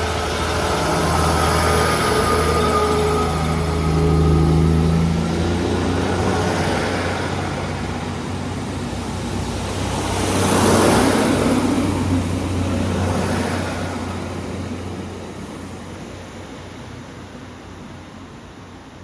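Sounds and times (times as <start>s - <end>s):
vehicle passing by: 0.0s - 14.3s
vehicle engine hum: 0.0s - 17.3s.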